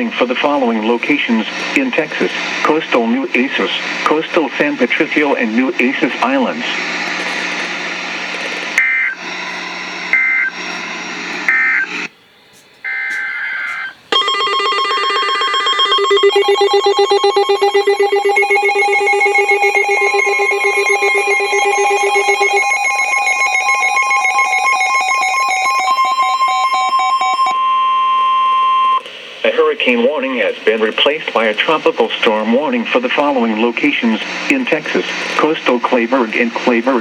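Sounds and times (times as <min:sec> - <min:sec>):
hissing feed: 0:06.6 - 0:09.7.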